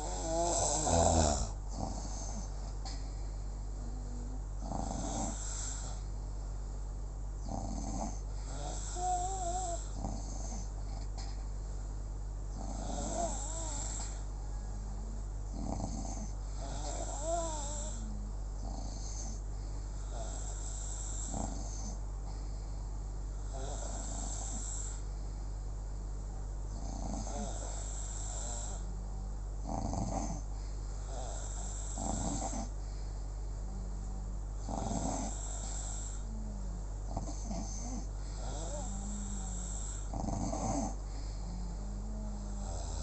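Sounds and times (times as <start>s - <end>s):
slow regular snoring: 0.0s - 3.1s, 3.8s - 6.1s, 7.4s - 11.4s, 12.6s - 14.3s, 15.5s - 19.4s, 20.0s - 22.0s, 23.4s - 25.1s, 26.7s - 29.0s, 29.6s - 32.8s, 33.6s - 43.0s
steady low hum: 0.0s - 43.0s.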